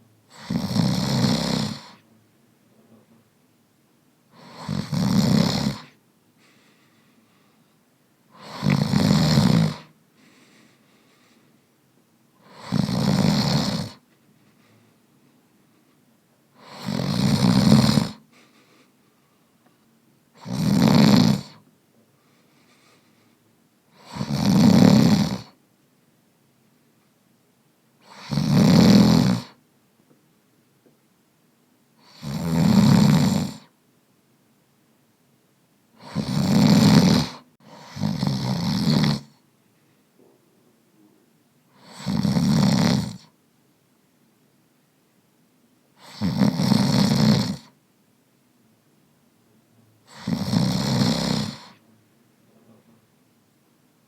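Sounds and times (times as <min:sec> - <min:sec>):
person snoring: 0:00.3 - 0:02.0, 0:04.3 - 0:06.0, 0:08.3 - 0:09.9, 0:12.4 - 0:14.0, 0:16.6 - 0:18.2, 0:20.4 - 0:21.6, 0:23.9 - 0:25.6, 0:28.0 - 0:29.6, 0:32.0 - 0:33.7, 0:36.0 - 0:39.4, 0:41.8 - 0:43.3, 0:46.0 - 0:47.7, 0:50.0 - 0:51.8
quiet breathing: 0:05.8 - 0:08.8, 0:09.8 - 0:12.8, 0:13.8 - 0:16.9, 0:18.1 - 0:20.0, 0:21.5 - 0:24.1, 0:39.2 - 0:41.9, 0:51.2 - 0:53.2.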